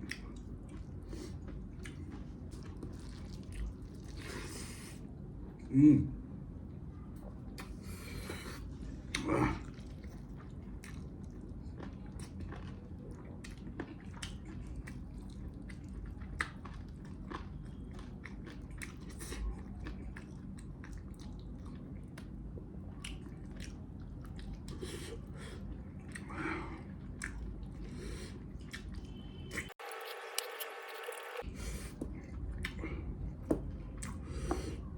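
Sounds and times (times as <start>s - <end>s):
close-up chewing: 0.0s - 4.9s, 7.6s - 32.8s.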